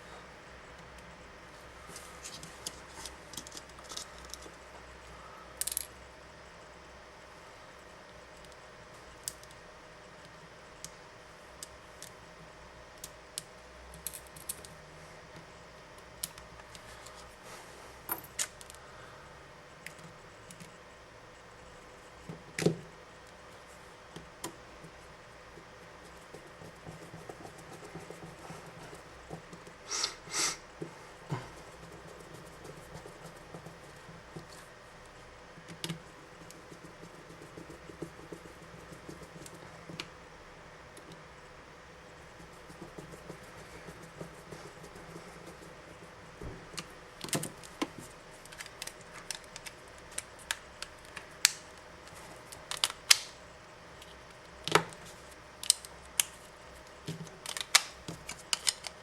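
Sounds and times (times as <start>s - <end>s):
faint steady hum: 0.0s - 59.0s
tools clicking on phone parts: 57.1s - 59.0s.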